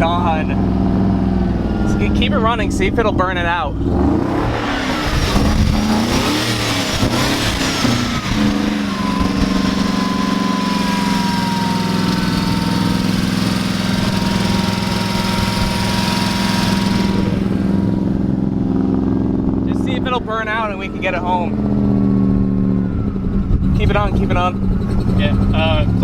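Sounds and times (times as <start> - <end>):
engine running rough: 0.0 - 26.0
thin steady whine: 6.1 - 18.3.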